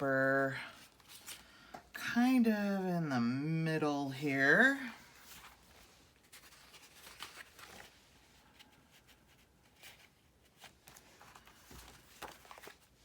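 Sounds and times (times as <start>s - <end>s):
paper sheets rustling: 0.6s - 1.7s, 5.0s - 13.0s.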